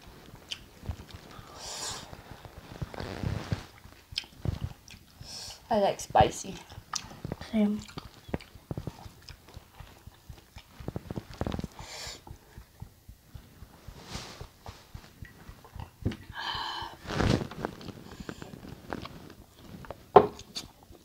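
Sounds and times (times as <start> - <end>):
rustling and breathy noises: 0.0 - 5.7, 6.7 - 20.8
chewing: 0.4 - 2.1, 3.6 - 5.3, 6.5 - 13.0.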